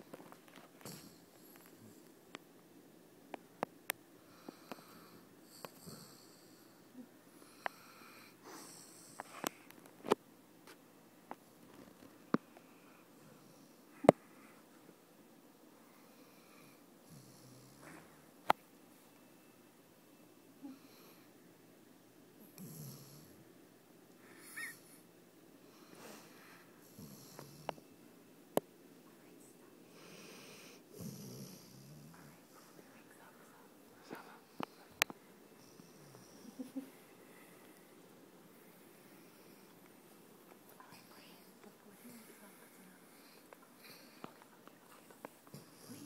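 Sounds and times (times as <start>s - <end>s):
dog snoring: 0.8s - 2.1s, 4.3s - 9.3s, 16.0s - 18.2s, 22.4s - 23.4s, 25.8s - 27.9s, 29.9s - 32.9s, 35.6s - 36.7s, 45.5s - 46.0s
high-pitched squeaky breath: 24.3s - 24.9s.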